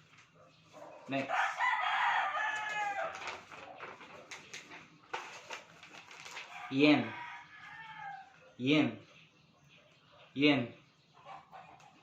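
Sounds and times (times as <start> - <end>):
rooster crowing: 1.3 - 3.4, 6.5 - 8.4.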